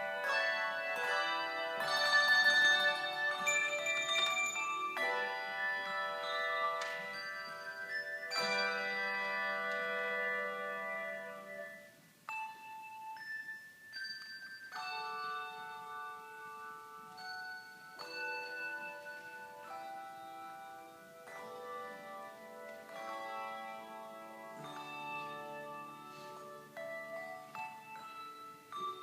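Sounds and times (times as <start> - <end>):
single bell notes: 0.0 - 11.0
handbell choir playing chords: 0.0 - 29.0.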